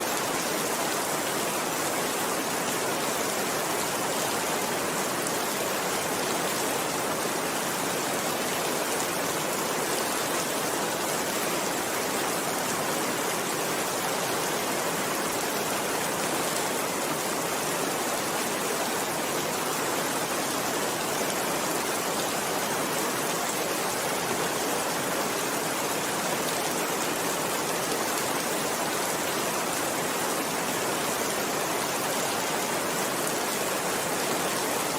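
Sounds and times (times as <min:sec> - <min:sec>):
steady rain hissing: 0:00.0 - 0:34.9.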